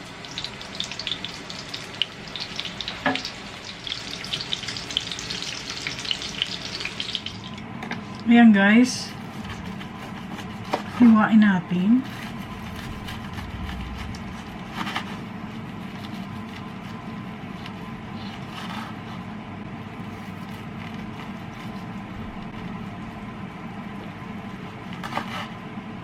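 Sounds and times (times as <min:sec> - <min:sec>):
steady hum: 0:00.0 - 0:26.0.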